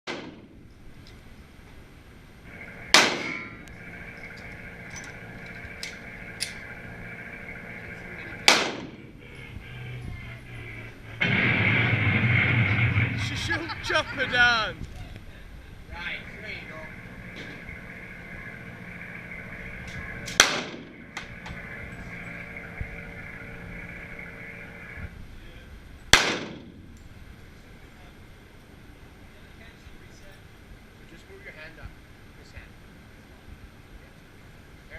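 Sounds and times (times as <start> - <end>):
pistol shots: 2.8 - 3.6, 8.4 - 9.1, 20.3 - 21.0, 26.1 - 26.8.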